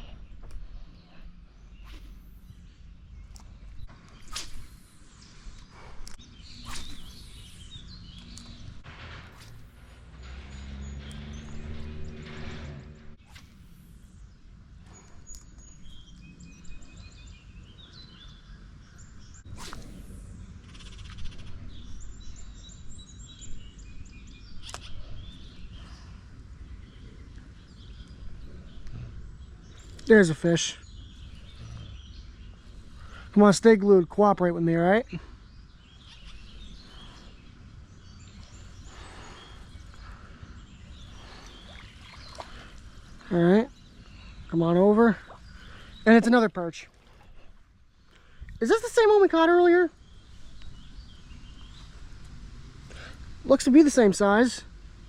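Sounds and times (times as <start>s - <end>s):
steady low rumble: 0.0s - 17.7s
songbirds chirping and singing: 0.0s - 55.0s.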